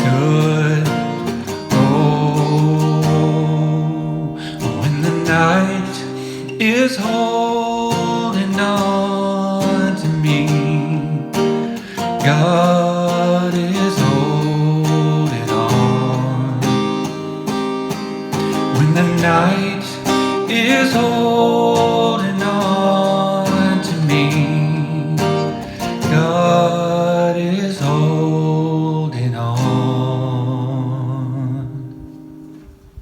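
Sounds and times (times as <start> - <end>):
person singing wordless notes: 0.0 - 17.3, 18.4 - 32.1
strummed acoustic guitar: 0.0 - 33.0.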